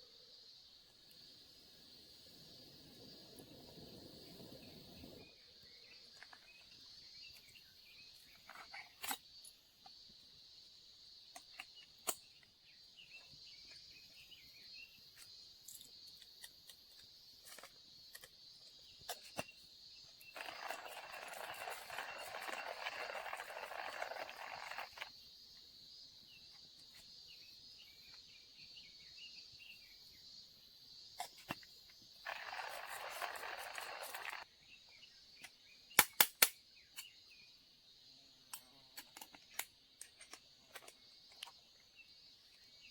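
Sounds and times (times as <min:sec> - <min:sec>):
insects droning: 0:00.0 - 0:42.9
sharp clicks: 0:36.0 - 0:37.1.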